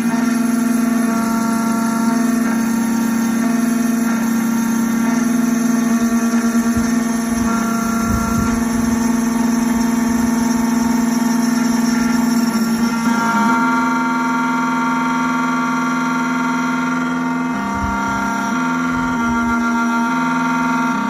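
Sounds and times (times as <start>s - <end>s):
key cutting machine humming: 0.0s - 21.0s.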